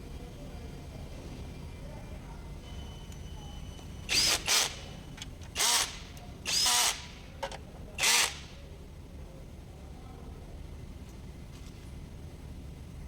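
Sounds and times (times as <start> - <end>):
power tool whining: 4.1 - 4.8, 5.5 - 7.2.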